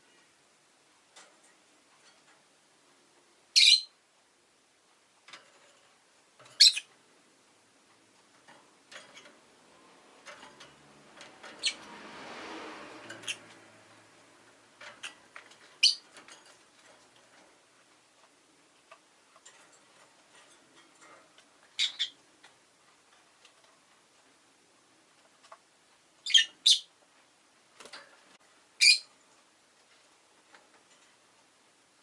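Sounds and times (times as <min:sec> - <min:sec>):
bird chirping: 0:03.5 - 0:04.0, 0:06.5 - 0:06.9, 0:11.4 - 0:11.9, 0:13.1 - 0:13.6, 0:15.0 - 0:16.2, 0:21.7 - 0:22.2, 0:26.2 - 0:26.9, 0:28.8 - 0:29.1
vehicle passing: 0:09.6 - 0:15.6.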